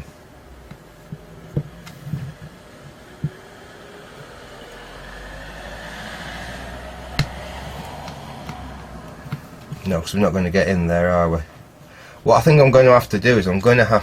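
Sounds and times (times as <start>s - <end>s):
low rumble: 1.2s - 11.9s.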